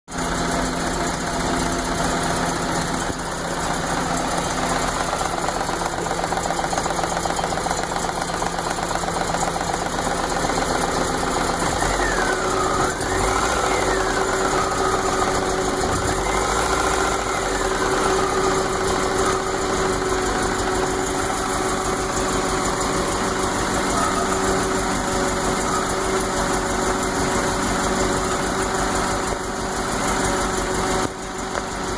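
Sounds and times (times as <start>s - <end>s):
car engine rough idle: 0.1s - 31.9s.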